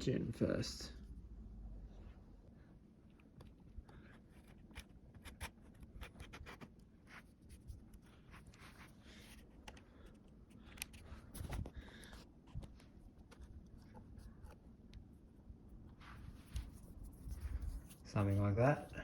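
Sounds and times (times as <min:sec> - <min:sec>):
small clicks and scrapes of parts: 0:03.2 - 0:14.6.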